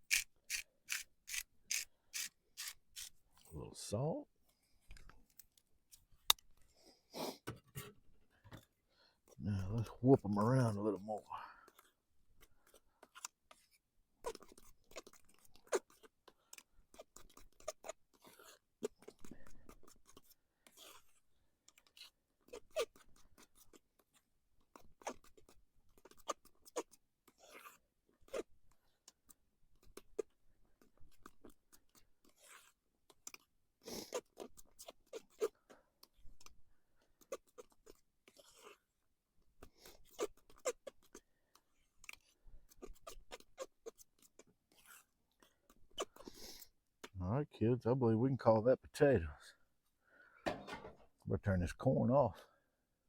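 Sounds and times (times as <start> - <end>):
utensil scraping a pot: 0.0 - 3.2.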